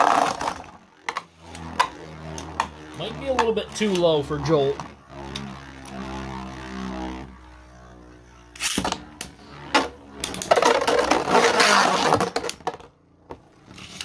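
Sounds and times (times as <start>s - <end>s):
spinning tops whirring: 0.0s - 14.0s.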